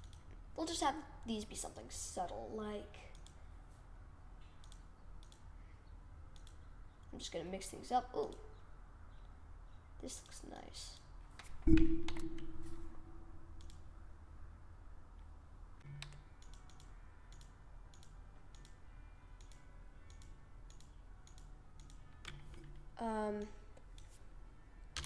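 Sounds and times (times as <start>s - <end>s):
computer mouse and keyboard clicks: 4.6s - 5.5s, 6.3s - 6.7s, 16.0s - 18.8s, 19.4s - 22.8s
loud thump with low ring: 11.7s - 13.6s.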